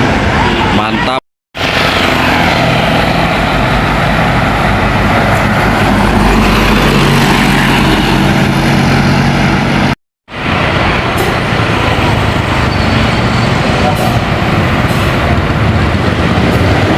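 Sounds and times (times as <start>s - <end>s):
tyre and road noise: 0.0s - 16.9s
bus diesel engine running: 1.6s - 16.9s.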